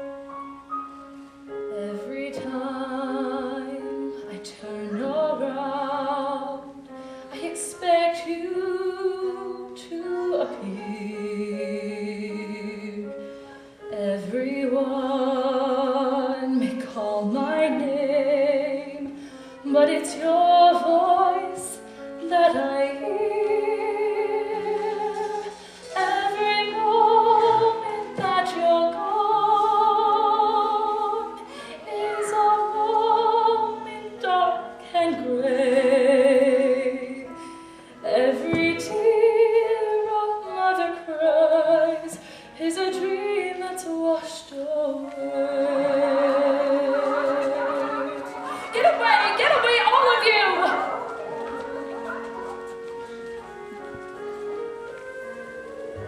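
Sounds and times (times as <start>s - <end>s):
woman singing a slow ballad: 13.9s - 37.3s, 38.0s - 48.2s.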